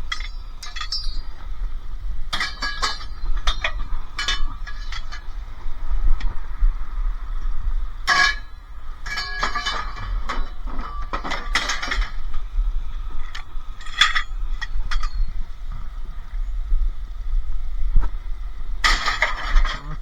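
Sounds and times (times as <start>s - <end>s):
scrap metal clanking: 0.0s - 6.3s, 8.0s - 15.6s, 18.8s - 20.0s.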